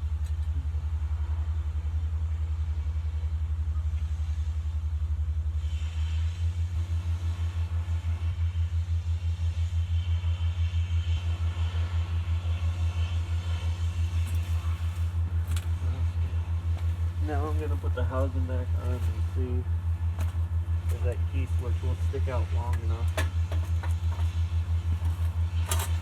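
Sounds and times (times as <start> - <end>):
low pulsing mechanical rumble: 0.0 - 26.0.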